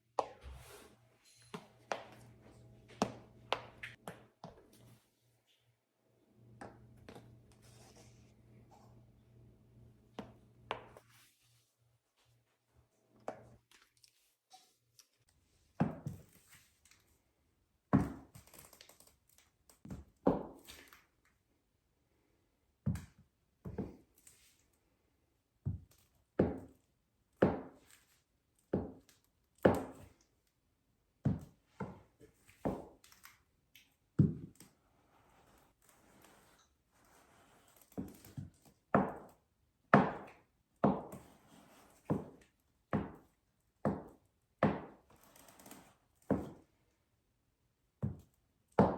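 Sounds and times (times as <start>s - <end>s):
high heels on hard floor: 1.5s - 4.6s, 37.9s - 39.3s, 39.9s - 41.4s, 42.0s - 45.0s, 48.0s - 48.9s.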